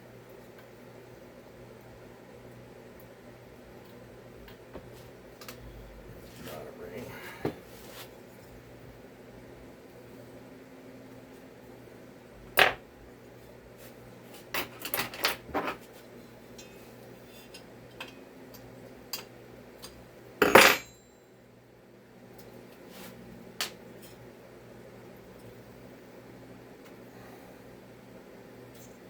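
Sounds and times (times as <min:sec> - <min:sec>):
metal parts clinking on workbench: 0:20.4 - 0:21.0.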